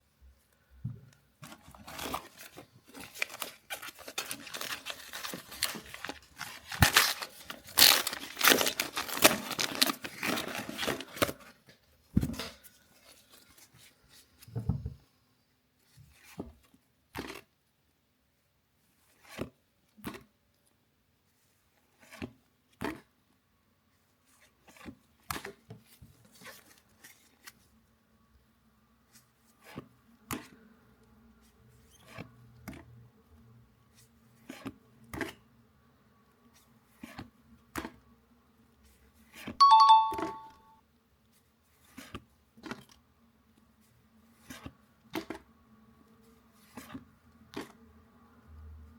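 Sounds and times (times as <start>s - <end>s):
card pack wrapper ripping: 1.8s - 11.4s.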